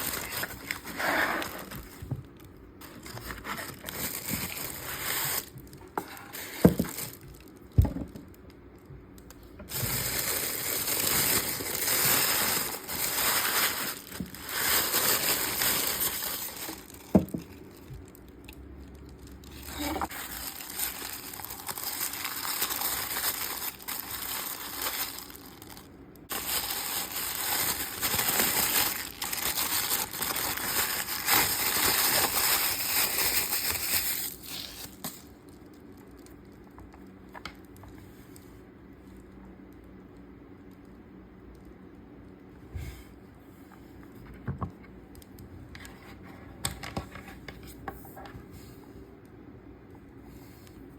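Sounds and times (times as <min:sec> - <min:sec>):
packaging crinkling and tearing: 0:00.0 - 0:07.8, 0:09.7 - 0:37.8.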